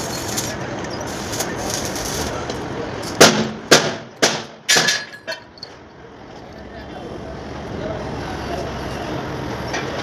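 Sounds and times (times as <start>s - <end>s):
steady noisy hum: 0.0s - 10.0s.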